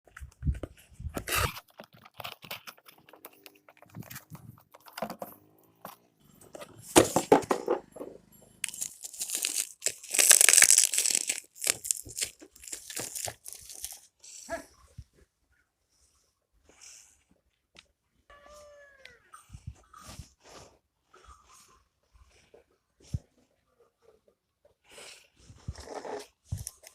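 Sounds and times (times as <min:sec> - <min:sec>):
packaging crinkling and tearing: 0:08.6 - 0:14.1.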